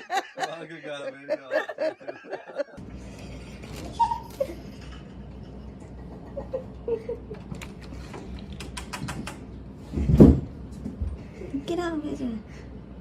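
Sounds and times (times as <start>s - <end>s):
animals squeaking: 3.7s - 4.6s
sharp clicks and taps: 8.4s - 9.4s.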